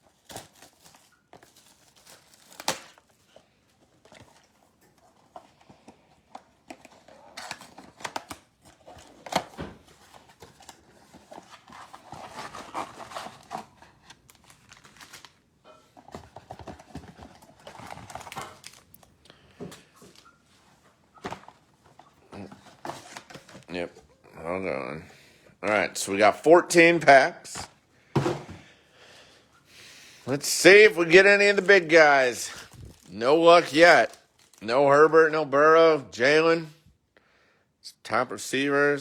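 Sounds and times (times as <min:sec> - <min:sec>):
plastic wrap crinkling and tearing: 0:00.0 - 0:03.4, 0:06.7 - 0:15.5, 0:16.4 - 0:19.2, 0:30.3 - 0:34.7
cardboard rustling: 0:00.0 - 0:19.1, 0:19.8 - 0:24.0, 0:30.3 - 0:34.6
clicks and knocks of handled packs: 0:00.0 - 0:20.3, 0:21.2 - 0:23.7, 0:30.8 - 0:34.7.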